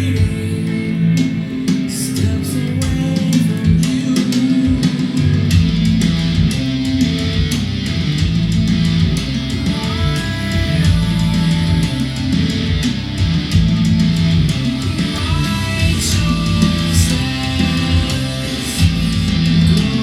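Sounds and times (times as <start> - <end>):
instrumental rock music: 0.0 - 20.0.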